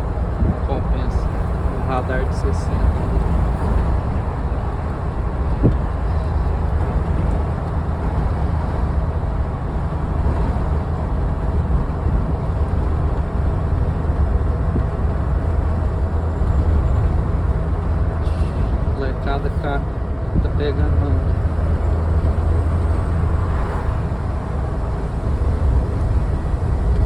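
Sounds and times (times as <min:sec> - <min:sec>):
vehicle road and wind noise: 0:00.0 - 0:27.0.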